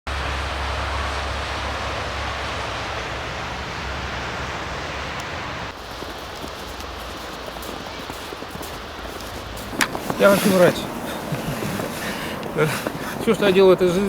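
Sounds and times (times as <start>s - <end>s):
rushing hiss: 5.8s - 14.0s.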